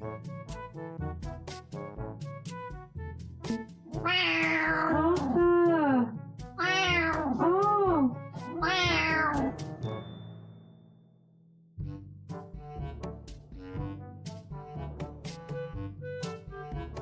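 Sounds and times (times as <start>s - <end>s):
light background music: 0.0s - 10.4s, 11.8s - 17.0s
cat meowing loudly: 4.0s - 4.9s, 6.6s - 7.4s, 8.6s - 9.4s.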